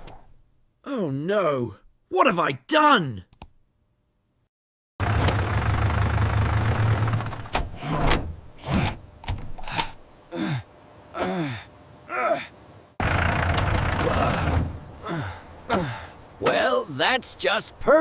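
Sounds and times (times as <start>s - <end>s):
tractor engine rumbling: 5.0s - 10.6s, 13.0s - 16.7s.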